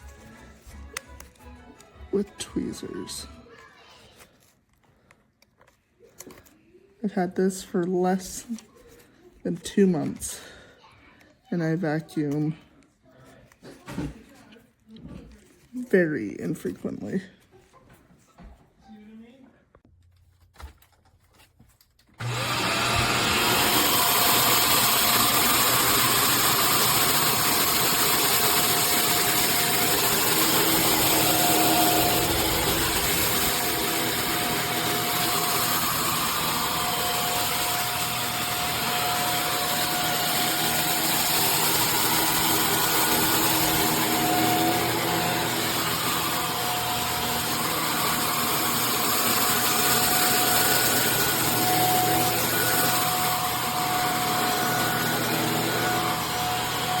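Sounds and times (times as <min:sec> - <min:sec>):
vacuum cleaner running: 0:00.0 - 0:03.4, 0:22.2 - 0:57.0.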